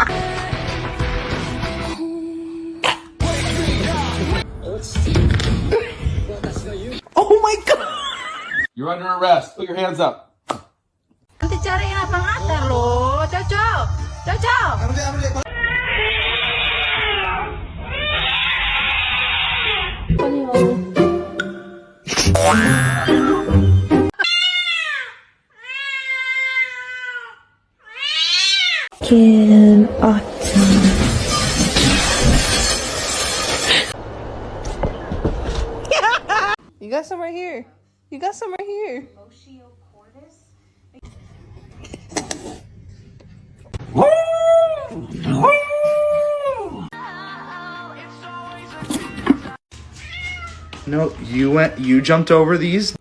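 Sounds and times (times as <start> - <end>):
background music: 0.0 - 5.5, 20.2 - 24.1, 47.0 - 50.0
cat meowing: 15.5 - 20.0, 24.2 - 28.9, 50.0 - 50.8
dog howling: 43.8 - 47.0.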